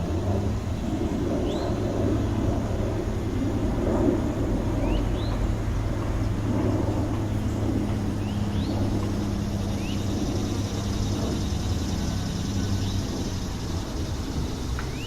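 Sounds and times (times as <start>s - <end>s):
droning engine hum: 0.0s - 15.0s
low traffic rumble: 0.0s - 15.0s
bird chirps: 4.8s - 5.5s, 8.2s - 15.0s.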